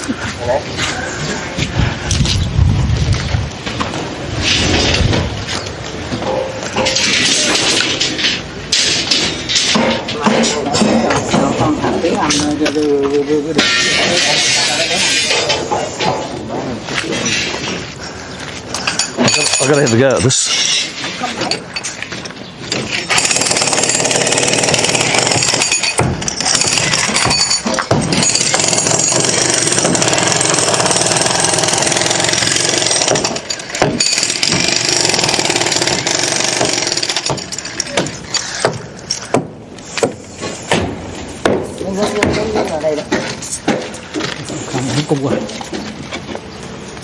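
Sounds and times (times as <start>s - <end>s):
jackhammer running: 23.1s - 37.8s.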